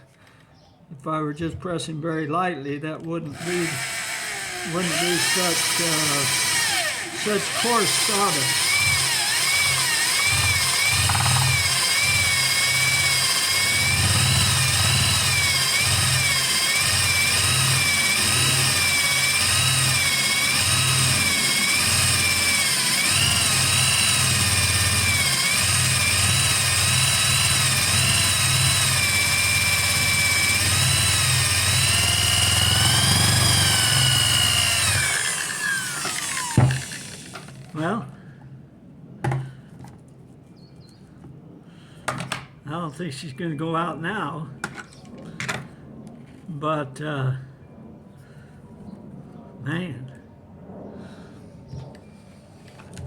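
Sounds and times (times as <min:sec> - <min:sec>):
electric drill motor whining: 0:03.3 - 0:37.8.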